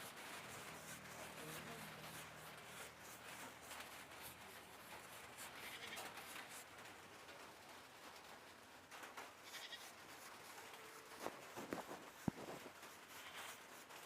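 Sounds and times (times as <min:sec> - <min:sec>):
goat bleating: 0:05.5 - 0:06.2, 0:09.4 - 0:10.0, 0:13.1 - 0:13.6.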